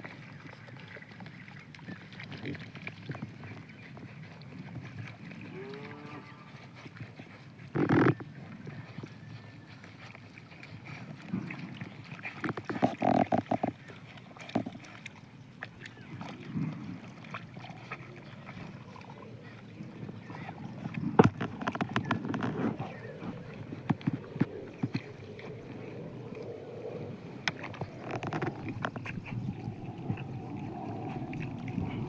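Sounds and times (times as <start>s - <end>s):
pigs grunting: 16.0s - 26.4s.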